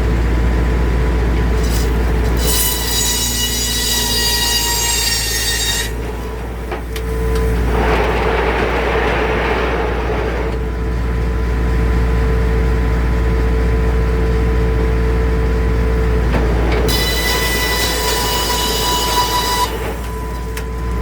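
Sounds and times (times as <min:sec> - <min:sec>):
sawmill humming: 0:00.0 - 0:21.0
saw blade cutting wood: 0:01.6 - 0:06.4, 0:16.9 - 0:21.0.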